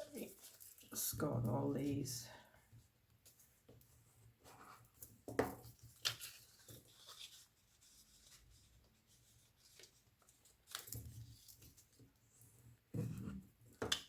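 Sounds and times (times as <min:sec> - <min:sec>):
paper scraping and rubbing: 0:06.1 - 0:10.0.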